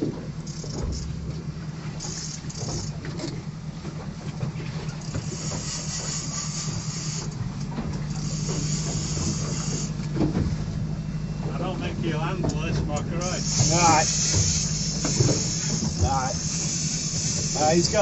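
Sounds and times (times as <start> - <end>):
low motor hum: 0.0 - 18.0
high hissing: 13.4 - 18.0.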